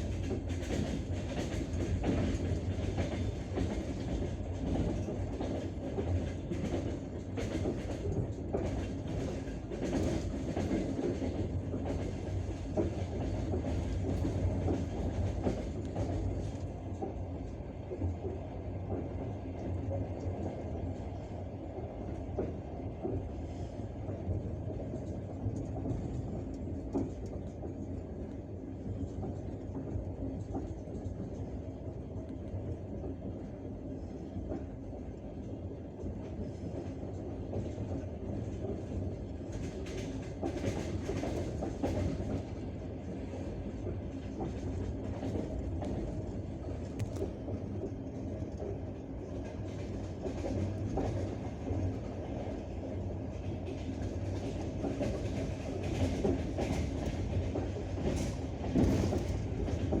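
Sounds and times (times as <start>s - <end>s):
train rumbling on rails: 0.0s - 60.0s.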